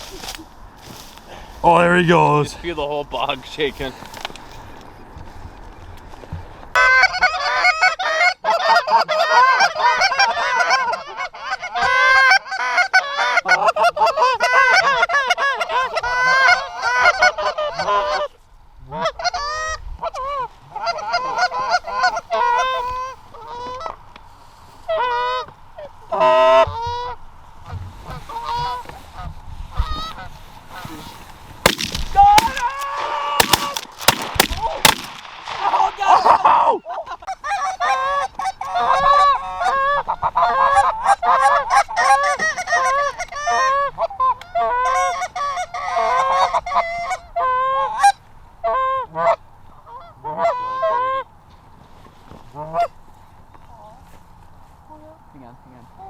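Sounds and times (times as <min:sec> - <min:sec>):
geese honking: 0:06.8 - 0:24.0, 0:24.8 - 0:31.0, 0:31.6 - 0:51.3.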